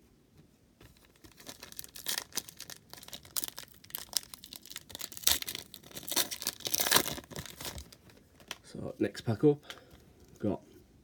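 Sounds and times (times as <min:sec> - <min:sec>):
wrapper tearing and crinkling: 0:01.0 - 0:08.6.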